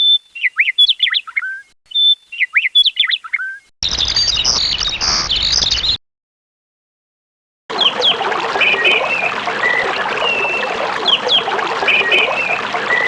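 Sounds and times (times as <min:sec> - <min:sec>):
lark singing: 0:07.7 - 0:13.0.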